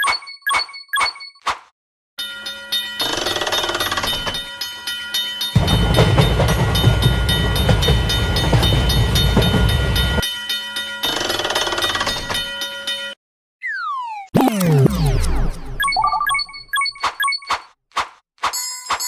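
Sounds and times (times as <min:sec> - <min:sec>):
railroad crossing alarm ringing: 0:02.2 - 0:13.2
train rumbling past: 0:05.5 - 0:10.2.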